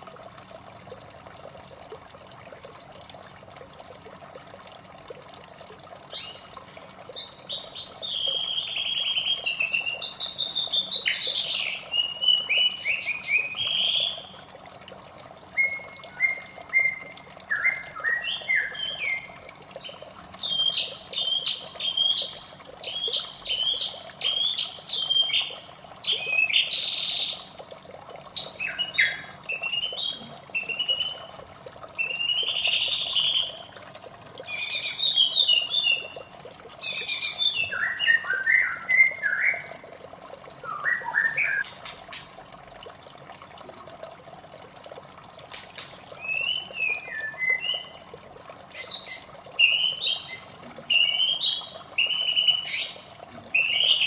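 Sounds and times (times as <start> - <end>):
rushing water: 0.0 - 54.0
bird singing whistled phrases: 7.2 - 14.2, 15.6 - 19.3, 20.4 - 25.5, 28.4 - 31.3, 32.0 - 33.6, 36.9 - 39.8, 40.6 - 41.7, 46.2 - 48.0, 48.8 - 54.0.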